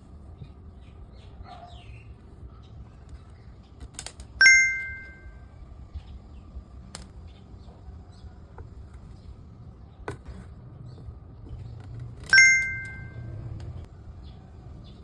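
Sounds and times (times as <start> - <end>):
sharp metallic ding: 4.4 - 5.4, 12.3 - 13.2.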